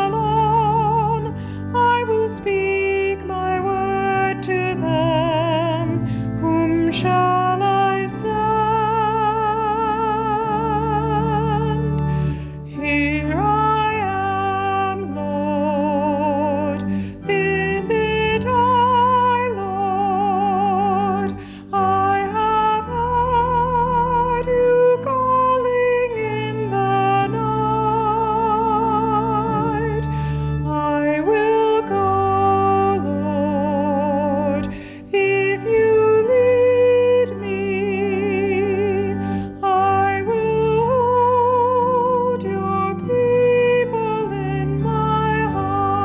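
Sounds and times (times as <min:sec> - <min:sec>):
sustained accompaniment chords: 0:00.0 - 0:46.0
woman singing with vibrato: 0:12.7 - 0:46.0.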